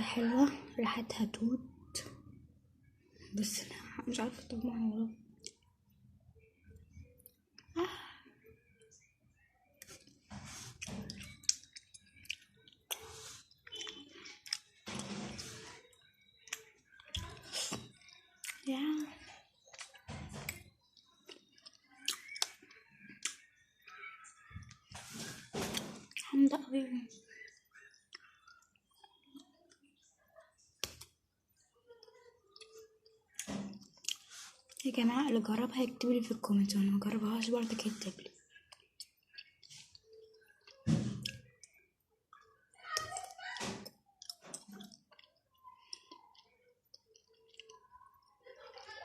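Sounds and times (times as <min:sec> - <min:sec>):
person chewing candy: 0:09.8 - 0:24.0, 0:32.0 - 0:34.9, 0:37.4 - 0:48.4
wet mouth clicks and smacks: 0:21.2 - 0:23.5, 0:43.2 - 0:48.3.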